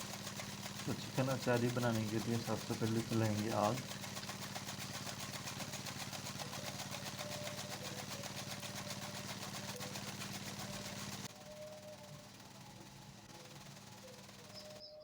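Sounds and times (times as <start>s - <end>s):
small motor humming: 0.0s - 15.0s.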